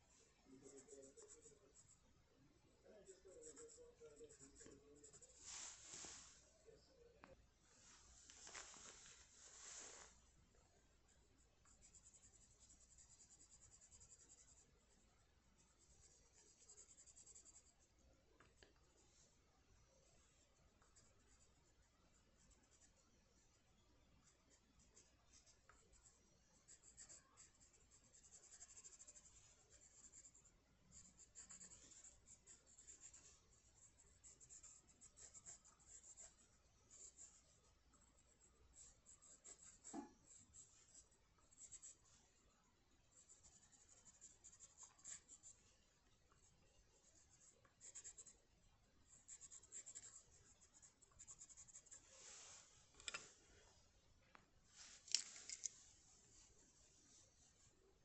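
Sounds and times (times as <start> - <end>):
drawing tool scratching on paper: 15.7 - 17.8, 24.5 - 37.5.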